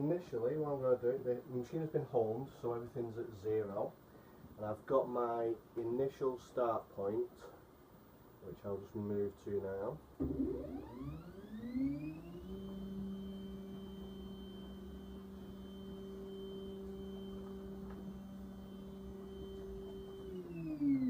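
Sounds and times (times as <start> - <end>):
stepper motors whining: 10.2 - 21.0.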